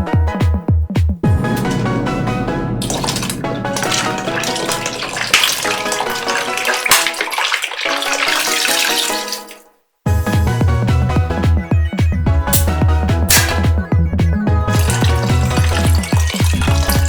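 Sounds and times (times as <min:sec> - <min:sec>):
electronic background music: 0:01.2 - 0:05.1, 0:10.1 - 0:17.0
soda fizzing: 0:02.8 - 0:09.7, 0:12.5 - 0:13.7, 0:14.6 - 0:17.0.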